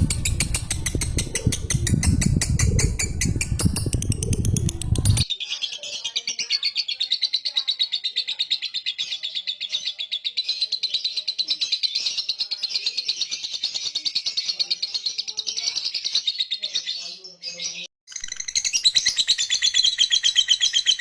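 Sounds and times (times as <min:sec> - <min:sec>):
bird chattering trill: 0:00.0 - 0:06.8.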